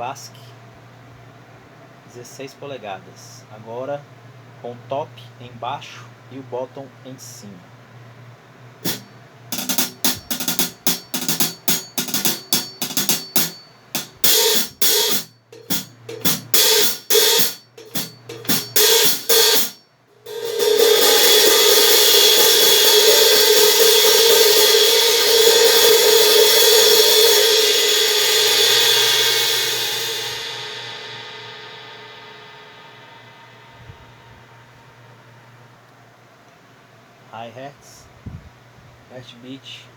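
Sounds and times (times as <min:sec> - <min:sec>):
open hi-hat wash: 0:07.2 - 0:36.4
hi-hat cymbal strikes: 0:08.8 - 0:35.8.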